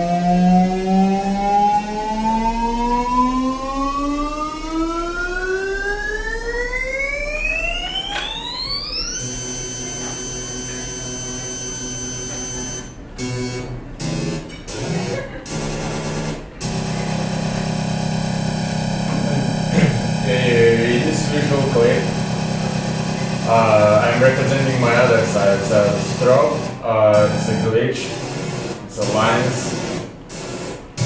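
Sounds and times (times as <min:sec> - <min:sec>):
electronic drone of fixed tones: 0:00.0 - 0:31.0
synthesized tone gliding upward: 0:00.2 - 0:09.2.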